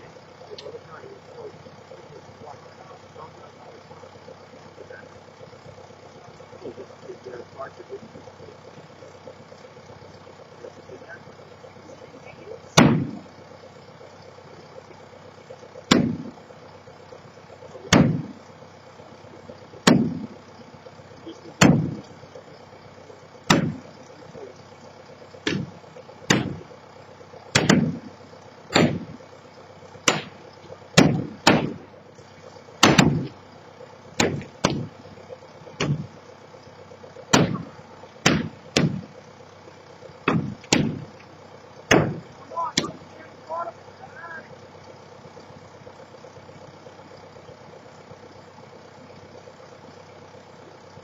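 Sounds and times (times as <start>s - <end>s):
steady engine hum: 0.0s - 51.0s
heavy demolition bangs: 12.7s - 13.3s, 17.9s - 18.4s, 21.5s - 22.1s, 23.4s - 23.9s, 25.4s - 26.8s, 27.5s - 29.2s, 30.0s - 32.0s, 32.8s - 33.4s, 35.8s - 36.1s, 37.3s - 39.2s, 40.2s - 41.2s, 41.9s - 43.2s.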